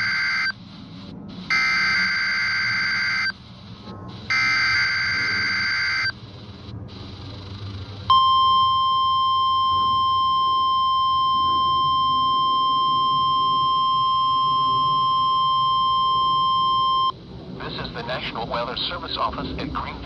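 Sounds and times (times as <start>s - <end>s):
long steady alarm beep: 0.0s - 0.6s, 1.4s - 3.4s, 4.3s - 6.2s, 8.1s - 17.2s.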